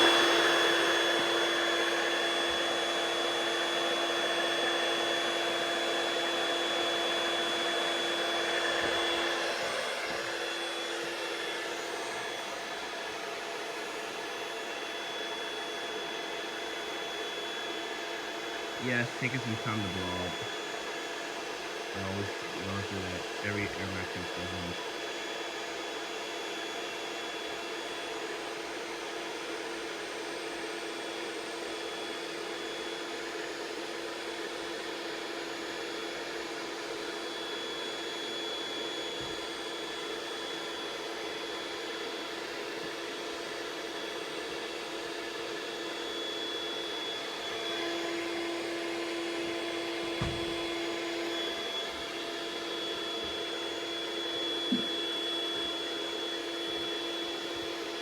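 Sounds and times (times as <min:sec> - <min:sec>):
electric air pump whirring: 0:00.0 - 0:15.3, 0:46.7 - 0:58.0.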